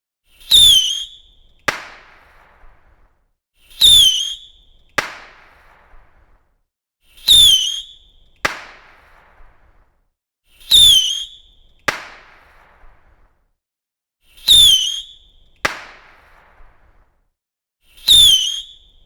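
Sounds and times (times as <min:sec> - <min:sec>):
firework whistle: 0:00.4 - 0:02.8, 0:03.6 - 0:06.2, 0:07.2 - 0:09.6, 0:10.6 - 0:13.2, 0:14.3 - 0:16.9, 0:18.0 - 0:19.0
firework bang: 0:01.7 - 0:03.0, 0:05.0 - 0:06.4, 0:08.4 - 0:09.8, 0:11.9 - 0:13.4, 0:15.7 - 0:17.1.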